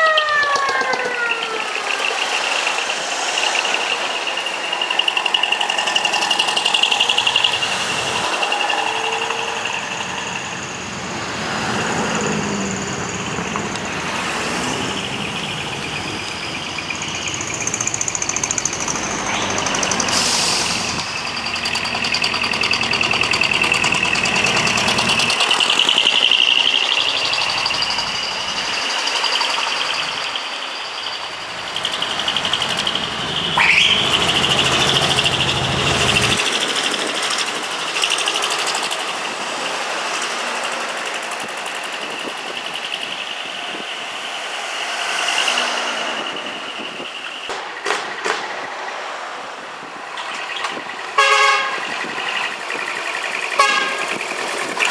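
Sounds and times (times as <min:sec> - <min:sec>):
high horn and siren tones: 0:00.0 - 0:30.4, 0:31.1 - 0:36.4, 0:51.2 - 0:54.9
rising siren whoop: 0:00.0 - 0:36.4
truck engines running: 0:00.0 - 0:54.9.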